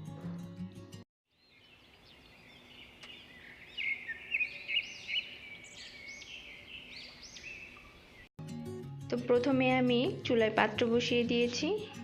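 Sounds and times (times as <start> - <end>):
small birds chirping: 1.3 - 8.3.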